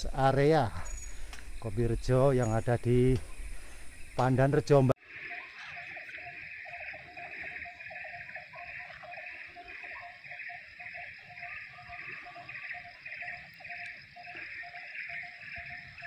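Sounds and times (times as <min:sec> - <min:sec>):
low chirping trill: 0:00.0 - 0:04.5, 0:05.2 - 0:16.0
pulsing animal call: 0:05.1 - 0:16.0.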